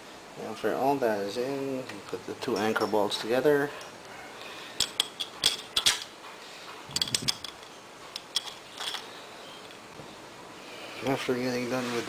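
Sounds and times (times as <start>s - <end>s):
metal parts clicking and clinking: 2.4s - 3.2s, 4.8s - 6.2s, 6.9s - 9.8s.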